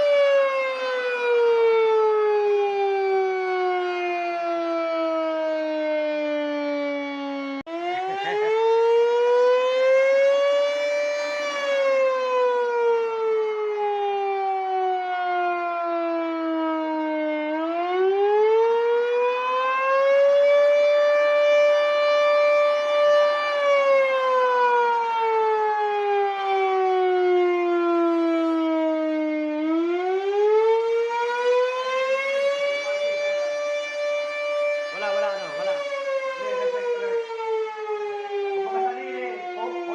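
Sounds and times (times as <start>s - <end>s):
air raid siren wailing: 0.0s - 39.9s.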